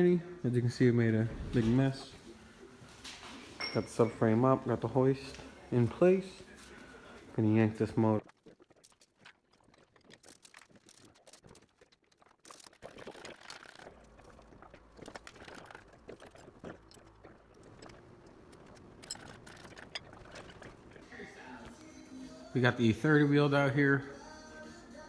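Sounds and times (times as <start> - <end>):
engine hoist chain clicks and knocks: 18.6 - 20.5.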